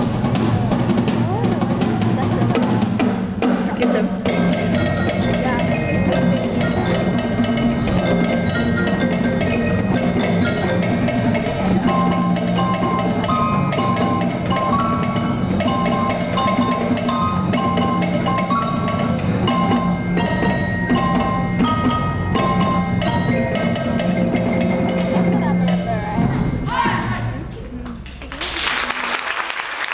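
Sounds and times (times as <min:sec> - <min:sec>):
steady percussion pattern: 0:00.0 - 0:27.8
cowbells playing fast runs: 0:04.3 - 0:26.9.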